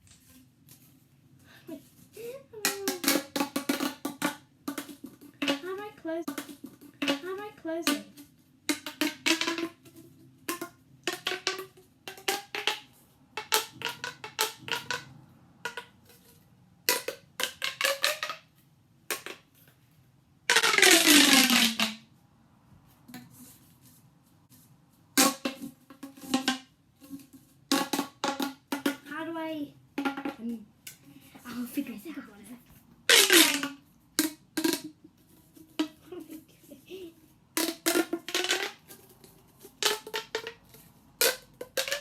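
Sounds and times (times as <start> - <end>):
plastic toy clicks and knocks: 2.6 - 18.5, 19.1 - 19.7, 37.6 - 42.0.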